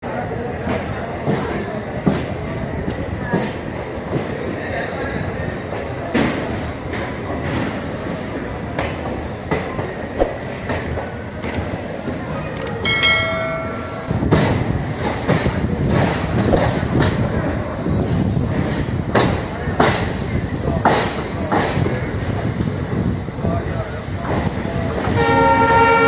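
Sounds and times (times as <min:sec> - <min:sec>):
train rumbling on track: 0:00.0 - 0:26.0
high wheel squeal: 0:10.4 - 0:14.1.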